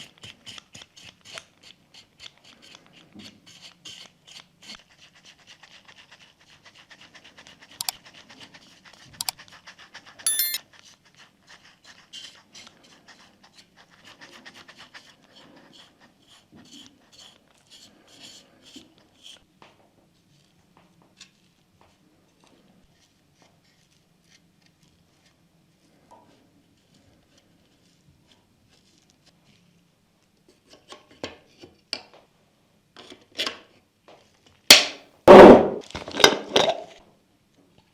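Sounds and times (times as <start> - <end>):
metallic ring: 10.3 - 10.6
sharp clicks: 10.3 - 10.6.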